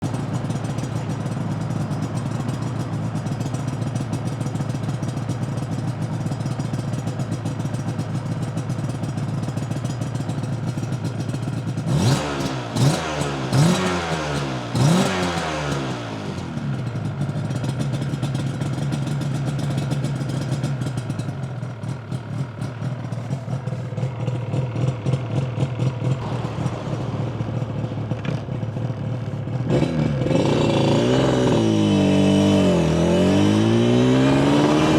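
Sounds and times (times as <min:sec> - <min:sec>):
two-stroke engine idling: 0:00.0 - 0:34.9
engine throttle blips: 0:25.5 - 0:34.9.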